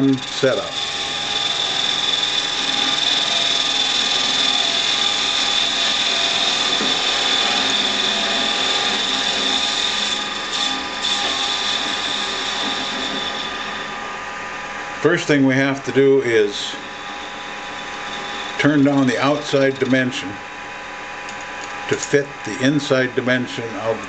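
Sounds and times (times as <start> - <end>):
metal lathe high whine: 0.0 - 24.0.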